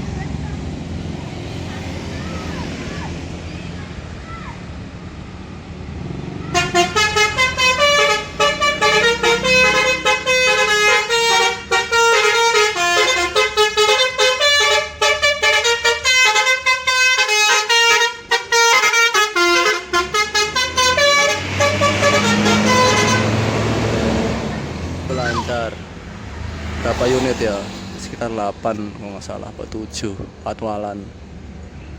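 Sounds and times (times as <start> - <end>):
bus engine running: 0.0 - 31.9
bus musical horn: 6.5 - 25.9.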